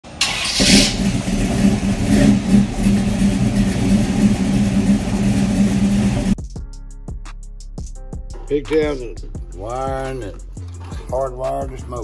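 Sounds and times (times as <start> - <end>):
engine running loudly: 0.9 - 6.4.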